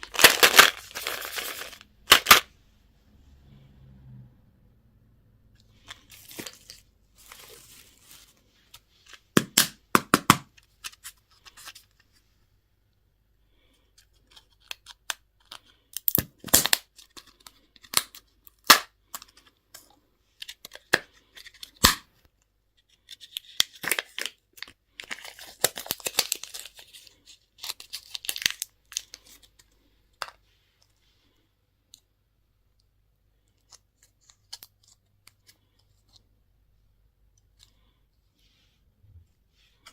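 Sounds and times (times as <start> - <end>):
plastic packaging crackling: 0.0 - 2.4.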